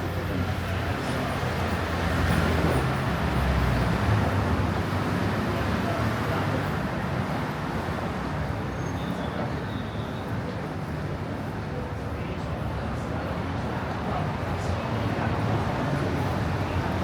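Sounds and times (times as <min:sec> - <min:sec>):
street noise: 0:00.0 - 0:17.0.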